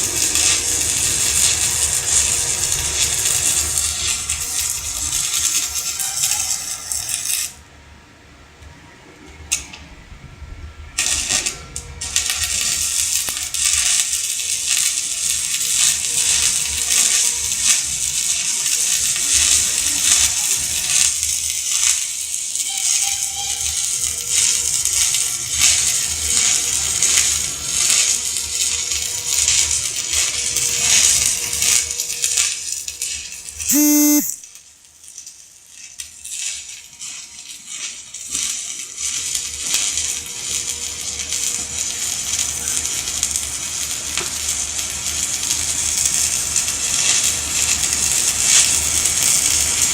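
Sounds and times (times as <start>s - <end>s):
electric arc welding crackling: 0.0s - 7.5s, 11.0s - 34.4s, 35.0s - 49.9s.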